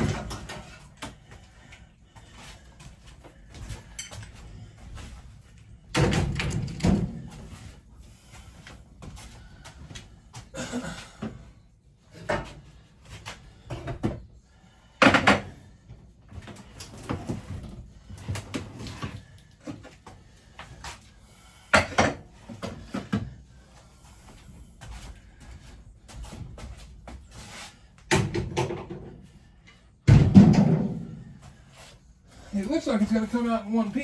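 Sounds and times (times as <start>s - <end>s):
cabinets knocking and rattling: 0.0s - 0.9s, 5.9s - 7.6s, 15.0s - 15.5s, 21.7s - 23.3s, 28.1s - 29.2s, 30.0s - 31.3s.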